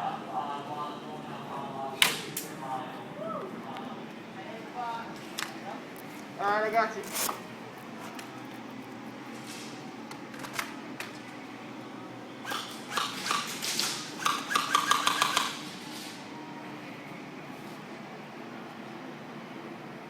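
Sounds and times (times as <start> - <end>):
airsoft guns firing: 12.5 - 15.6.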